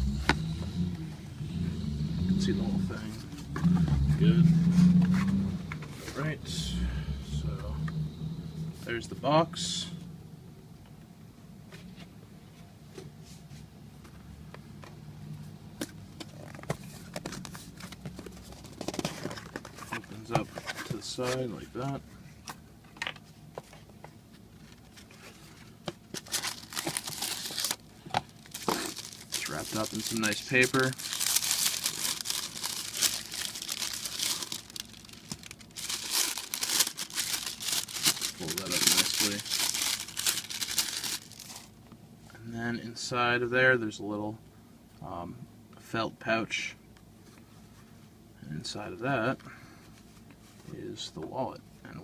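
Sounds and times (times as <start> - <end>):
steady low hum: 0.0 - 52.0
wrapping paper crinkling: 26.0 - 41.8.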